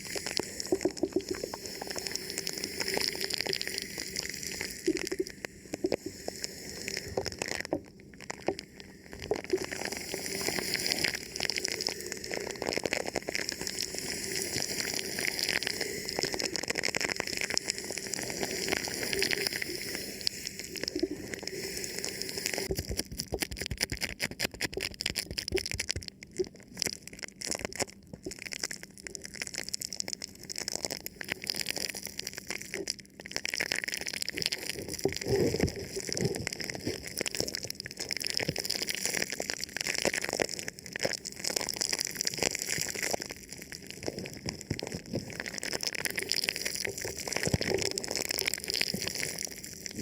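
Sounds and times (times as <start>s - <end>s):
plastic film crinkling on microphone: 22.6s - 50.0s.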